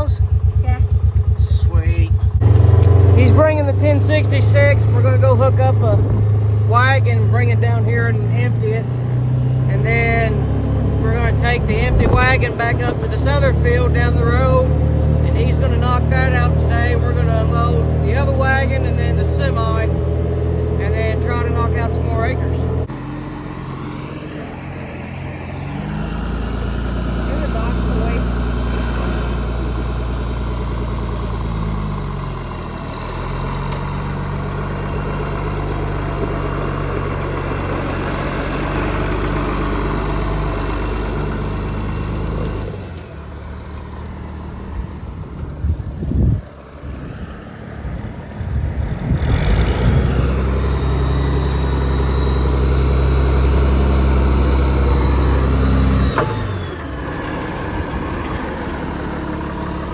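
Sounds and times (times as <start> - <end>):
turbo whine: 0.0 - 8.8, 9.7 - 23.0, 47.8 - 59.9
tractor diesel engine running: 0.0 - 59.9
clunks: 51.4 - 59.9.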